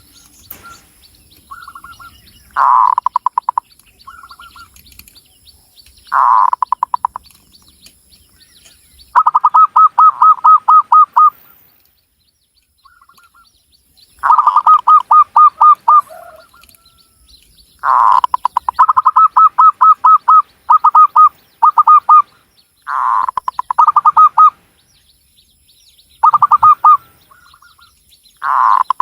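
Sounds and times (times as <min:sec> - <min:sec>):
dove cooing: 0:09.2 - 0:11.4, 0:14.2 - 0:16.8, 0:17.8 - 0:22.3, 0:22.9 - 0:24.6, 0:26.2 - 0:27.8, 0:28.4 - 0:29.0.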